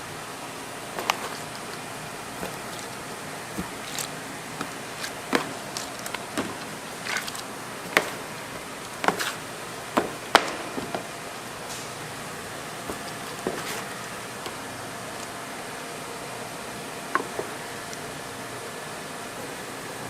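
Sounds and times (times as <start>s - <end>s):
steady background hiss: 0.0s - 20.0s
utensils knocking and clicking: 3.6s - 11.1s.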